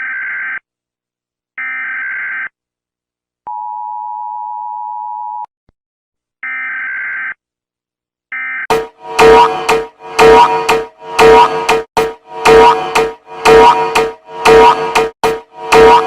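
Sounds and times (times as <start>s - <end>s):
buzzy electronic alert bursts: 8.7s - 16.0s
loud sound: 8.7s - 16.0s
steady electronic beep: 8.7s - 16.0s.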